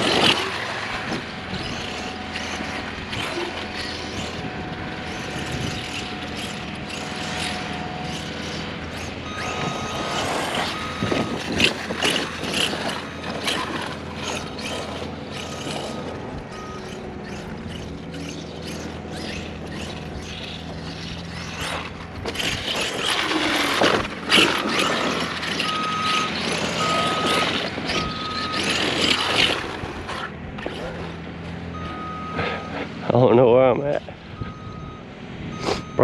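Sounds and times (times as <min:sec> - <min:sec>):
electric motor whining: 0:00.0 - 0:33.0
tyres churning soft dirt: 0:00.0 - 0:36.0
short steady beeps: 0:09.2 - 0:13.5, 0:15.5 - 0:17.0, 0:25.1 - 0:29.2, 0:31.7 - 0:32.9, 0:34.4 - 0:36.0.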